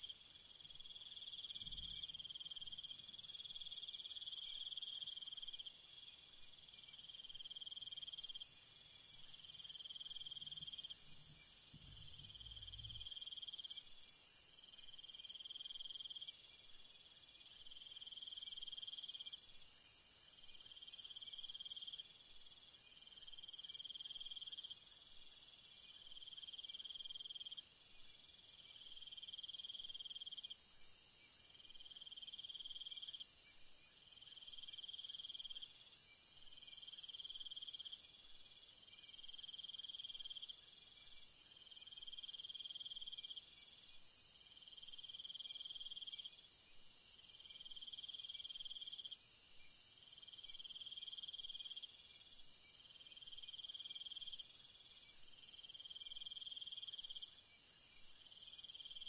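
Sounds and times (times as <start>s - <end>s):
lower pulsing insect trill: 0.0s - 59.0s
high insect trill: 7.0s - 16.2s.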